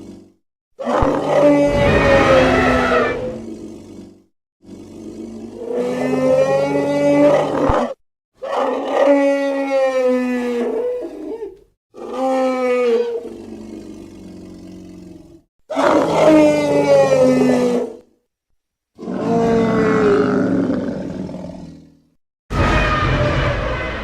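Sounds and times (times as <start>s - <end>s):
drawn-out animal roars: 0.0s - 8.0s, 12.0s - 18.0s, 19.0s - 22.0s.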